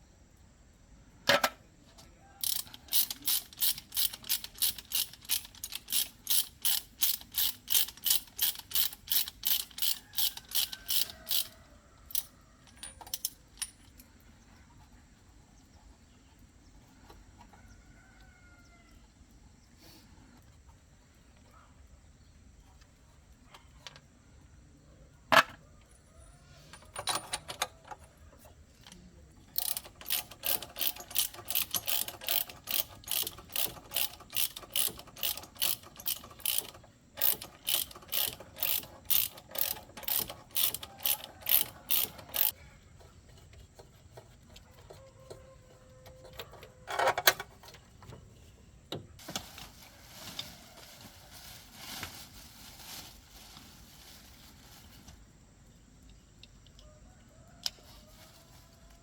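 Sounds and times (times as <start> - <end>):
tool clatter: 1.3 - 1.6, 2.4 - 14.0, 28.8 - 42.6
hand tool strokes: 2.4 - 14.0, 29.5 - 52.4.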